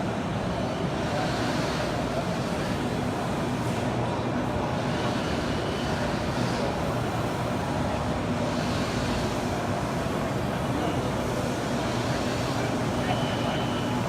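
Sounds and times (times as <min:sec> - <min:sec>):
exhibition hall din: 0:00.0 - 0:14.0
faint machine tones: 0:12.5 - 0:14.0.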